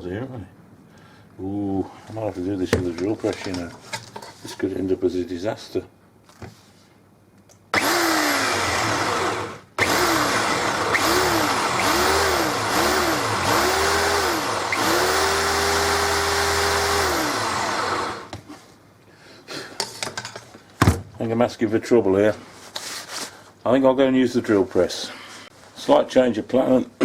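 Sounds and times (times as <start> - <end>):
cordless drill boring into wood: 7.7 - 18.3.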